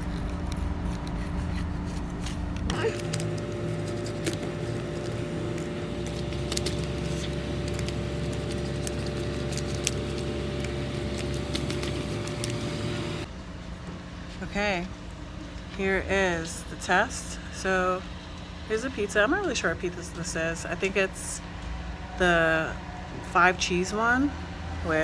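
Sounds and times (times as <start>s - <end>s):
packaging clicking and rattling: 0.0s - 13.3s
mechanical hum: 0.0s - 25.0s.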